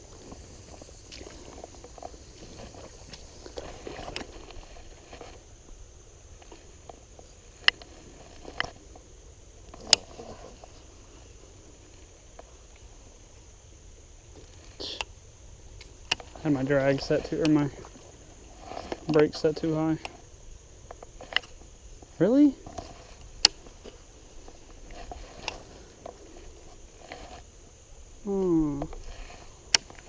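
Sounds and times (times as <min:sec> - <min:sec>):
water sloshing around legs: 0:00.0 - 0:05.6.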